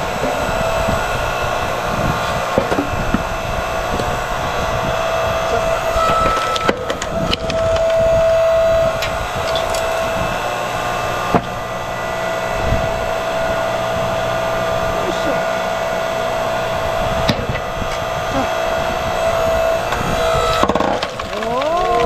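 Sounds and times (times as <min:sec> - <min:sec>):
log splitter motor whining: 0:00.0 - 0:22.0
log cracking: 0:19.8 - 0:22.0.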